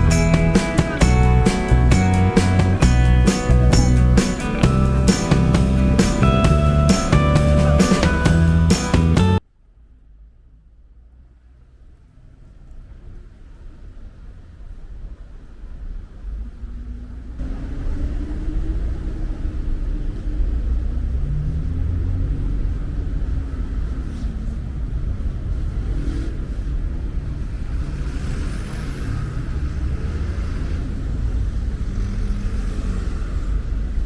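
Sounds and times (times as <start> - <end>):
vehicle engine rumbling: 0.0 - 9.4.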